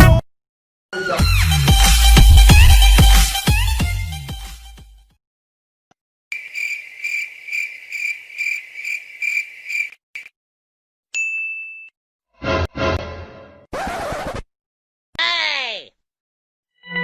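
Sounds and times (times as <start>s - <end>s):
crickets chirping: 6.3s - 10.0s.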